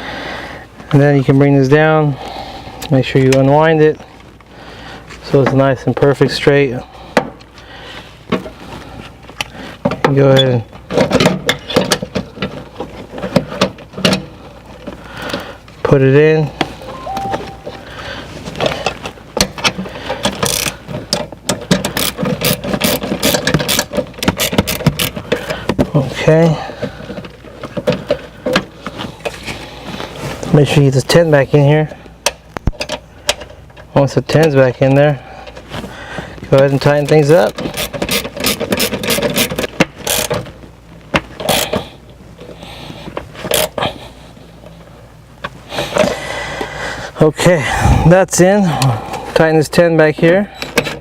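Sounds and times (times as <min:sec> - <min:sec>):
seatbelt parts clicking and rattling: 0:18.8 - 0:25.4, 0:37.6 - 0:40.5
ratchet wrench clicking: 0:20.4 - 0:20.7, 0:22.0 - 0:25.1.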